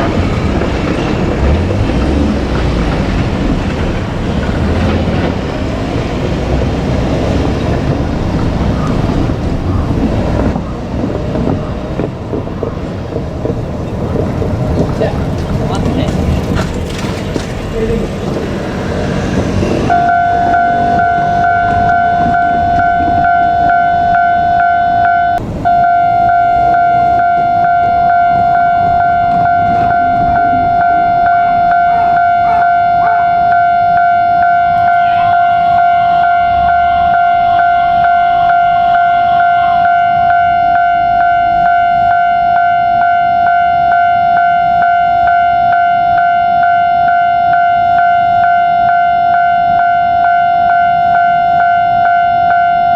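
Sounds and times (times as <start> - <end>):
level crossing warning bell: 19.0 - 52.9.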